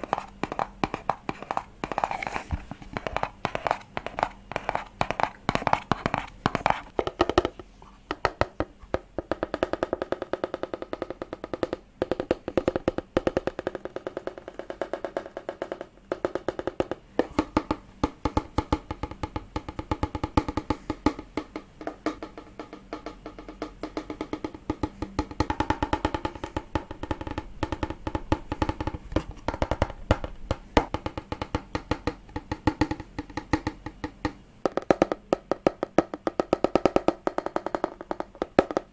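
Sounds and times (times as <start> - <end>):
crisp tapping on hard objects: 0.0 - 38.9.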